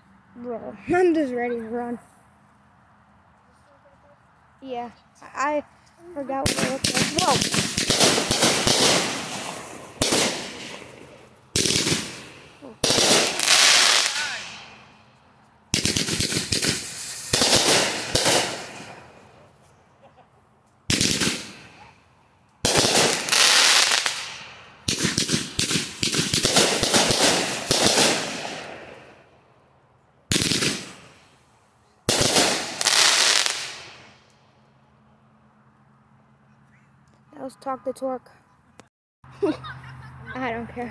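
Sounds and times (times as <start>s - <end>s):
fireworks crackling: 6.2s - 19.7s, 20.9s - 22.0s, 22.6s - 29.3s, 30.3s - 31.5s, 32.1s - 34.4s
fireworks bangs: 6.3s - 15.1s, 15.7s - 19.5s, 20.9s - 21.9s, 22.6s - 29.2s, 30.3s - 31.3s, 32.1s - 34.2s.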